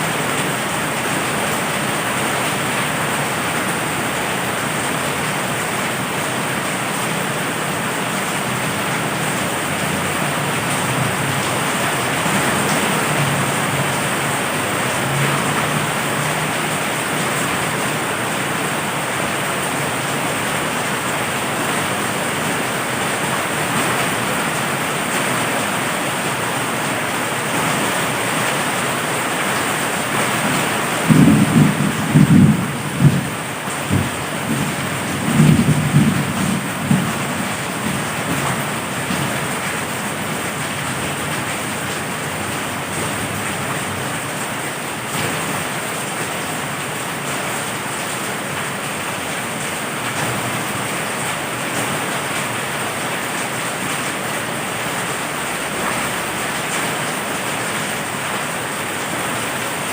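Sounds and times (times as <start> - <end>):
heavy rain hissing: 0.0 - 59.9
low thunder rumble: 31.0 - 39.2.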